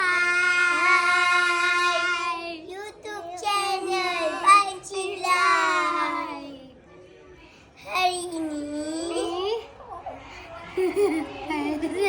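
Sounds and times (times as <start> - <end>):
child singing: 0.0 - 6.8.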